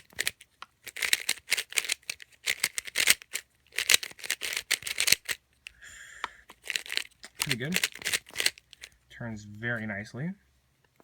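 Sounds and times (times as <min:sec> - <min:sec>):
plastic puzzle cube clicking: 0:00.0 - 0:05.8, 0:06.5 - 0:09.0.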